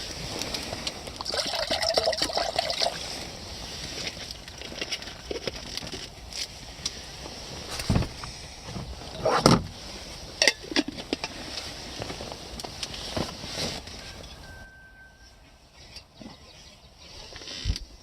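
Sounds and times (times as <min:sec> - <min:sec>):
water trickling and pouring: 0:01.1 - 0:03.2.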